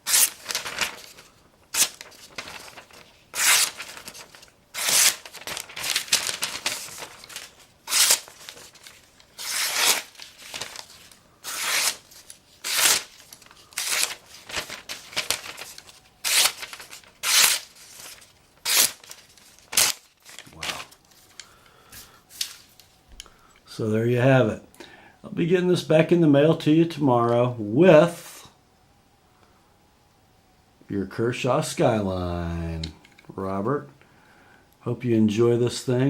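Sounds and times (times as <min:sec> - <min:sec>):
knife slicing paper: 0:00.0 - 0:21.0
paper rustling: 0:00.0 - 0:23.2.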